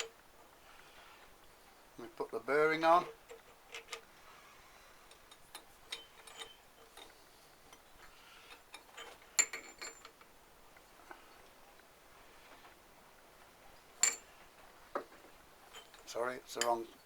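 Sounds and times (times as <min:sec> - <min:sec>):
metal parts and tools clinking: 0:00.0 - 0:00.2, 0:02.8 - 0:04.1, 0:05.0 - 0:11.6, 0:13.7 - 0:17.0.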